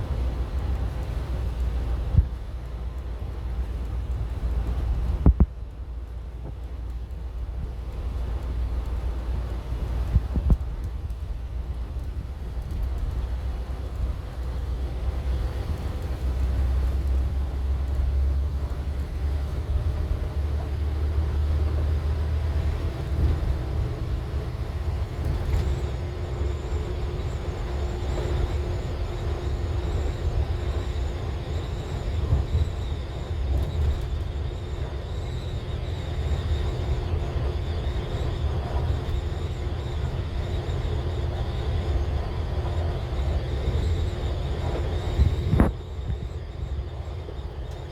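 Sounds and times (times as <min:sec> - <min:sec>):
bus engine and road rumble: 0:00.0 - 0:47.9
faint high whine: 0:19.4 - 0:47.9.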